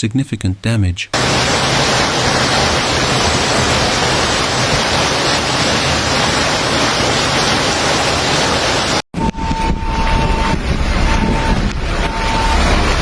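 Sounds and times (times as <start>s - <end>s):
floodwater rushing: 1.2s - 9.0s.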